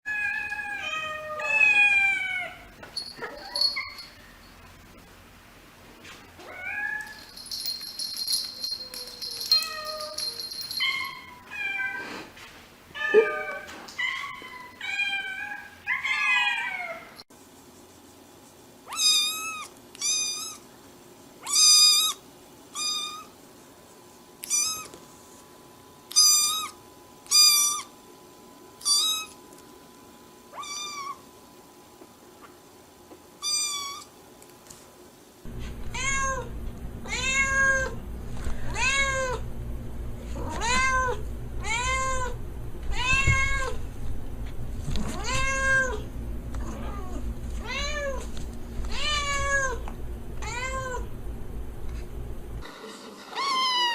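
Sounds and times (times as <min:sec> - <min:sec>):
cats meowing: 0:00.1 - 0:04.3, 0:13.0 - 0:17.2, 0:45.0 - 0:46.0.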